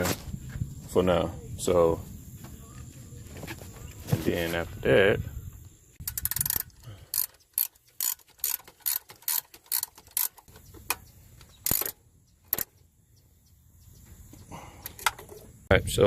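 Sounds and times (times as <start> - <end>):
ratchet wrench clicking: 6.0 - 12.8.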